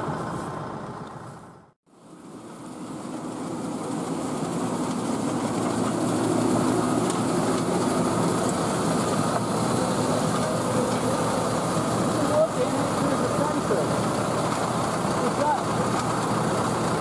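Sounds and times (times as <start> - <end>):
heavy farm machinery rumble: 0.0 - 17.0.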